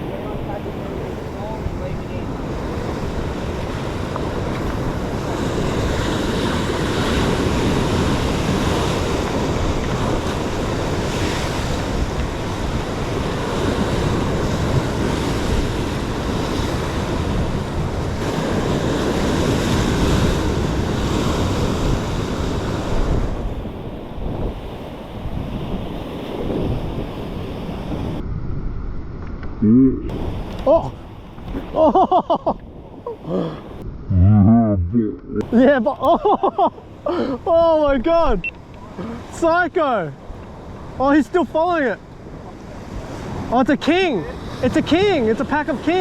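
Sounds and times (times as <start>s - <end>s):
surf washing against rocks: 0.0s - 28.2s, 35.4s - 46.0s
wind buffeting microphone: 0.0s - 29.2s.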